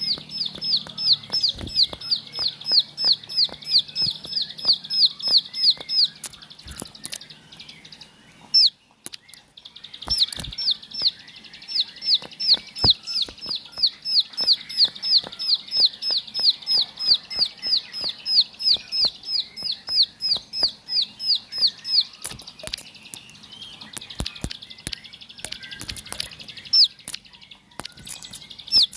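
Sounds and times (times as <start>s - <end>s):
small bird singing high notes: 0.0s - 28.9s
faint clicks and flutters: 10.0s - 11.2s.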